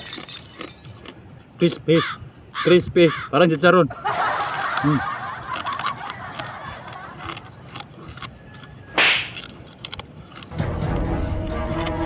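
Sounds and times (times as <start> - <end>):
crunching and chewing: 0.0 - 1.9, 4.0 - 12.0
background music: 10.5 - 12.0.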